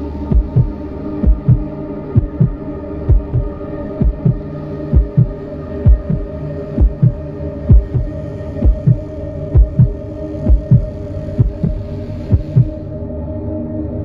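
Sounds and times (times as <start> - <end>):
low hum: 0.0 - 14.0
heartbeat double thump: 0.3 - 1.6, 2.2 - 4.4, 5.0 - 5.3, 5.9 - 9.0, 9.6 - 10.8, 11.4 - 12.7.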